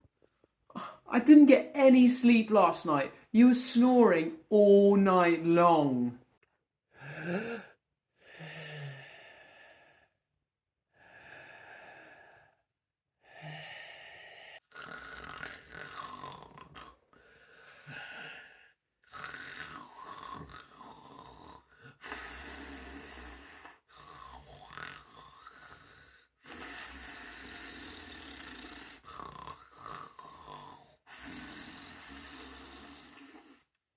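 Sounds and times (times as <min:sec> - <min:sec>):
person snoring: 0:02.3 - 0:06.1, 0:13.4 - 0:33.7.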